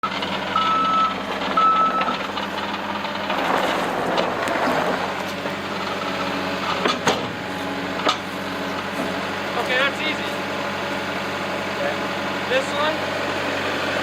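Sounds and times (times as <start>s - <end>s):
reversing alarm beeping: 0.0s - 2.2s
skid steer engine running: 0.0s - 14.0s.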